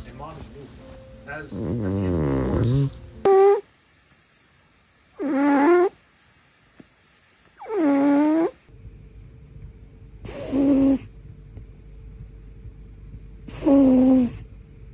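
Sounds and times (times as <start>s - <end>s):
faint steady hum: 0.0s - 14.9s
cat snoring: 1.4s - 3.6s, 5.2s - 6.0s, 7.6s - 8.7s, 10.2s - 11.2s, 13.5s - 14.5s.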